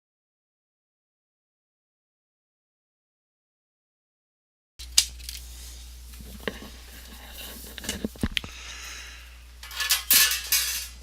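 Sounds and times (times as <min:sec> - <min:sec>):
steady low hum: 0:04.8 - 0:11.0.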